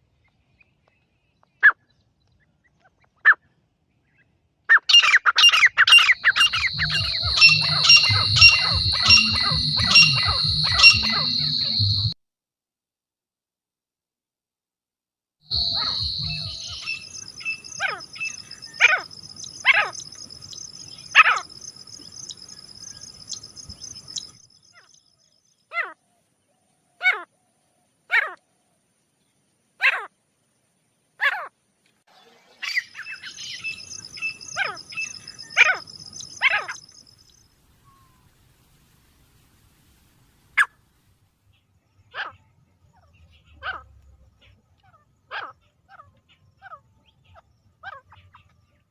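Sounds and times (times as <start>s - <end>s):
francolin calling: 4.9s - 12.2s, 15.5s - 25.0s, 32.6s - 38.3s
high buzzing drone: 6.2s - 12.2s, 15.5s - 17.7s.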